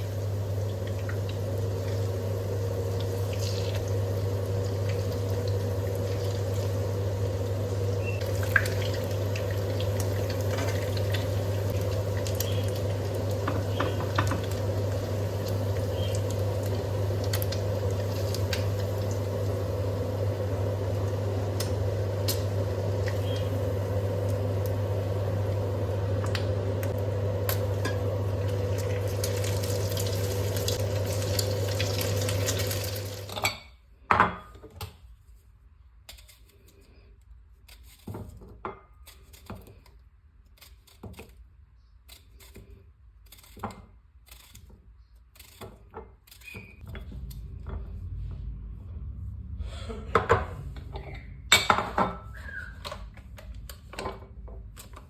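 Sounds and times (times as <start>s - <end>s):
kitchen appliance humming: 0.0s - 33.7s, 45.3s - 55.0s.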